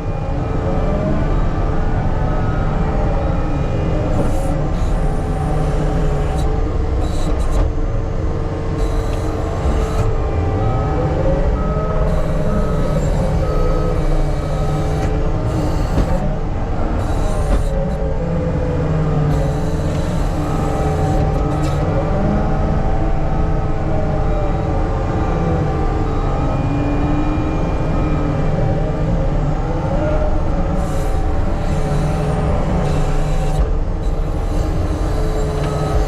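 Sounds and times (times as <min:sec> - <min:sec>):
diesel earthmoving machine running: 0:00.0 - 0:36.0
reversing alarm beeping: 0:08.8 - 0:18.0, 0:30.8 - 0:36.0.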